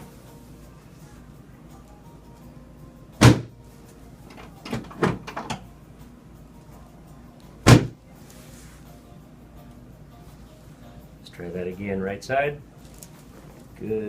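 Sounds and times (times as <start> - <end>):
sharp thuds on treatment table: 3.2 - 3.5, 7.7 - 8.0.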